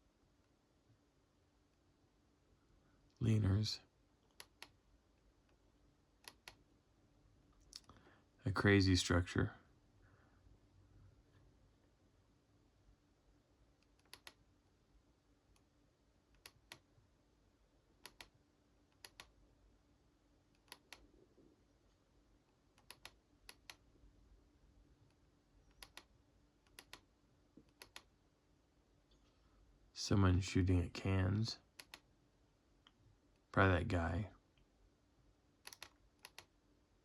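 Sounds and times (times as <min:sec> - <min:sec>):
faint steady hum: 0:00.0 - 0:37.0
computer mouse clicks: 0:04.3 - 0:04.8, 0:06.2 - 0:06.6, 0:13.8 - 0:14.4, 0:16.3 - 0:16.9, 0:18.0 - 0:19.4, 0:20.5 - 0:21.1, 0:22.5 - 0:23.9, 0:25.1 - 0:28.1, 0:31.7 - 0:32.1, 0:35.6 - 0:36.6.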